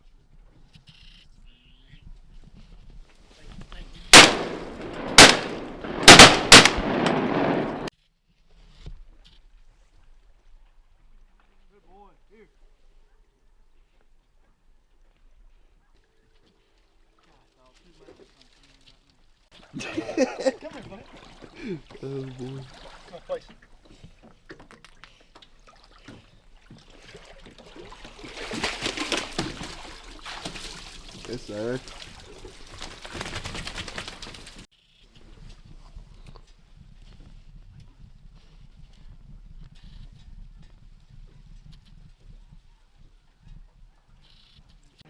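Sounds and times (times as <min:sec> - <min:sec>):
shotguns firing: 0:04.2 - 0:07.9
water splashing and sloshing: 0:20.3 - 0:24.0, 0:24.6 - 0:34.6.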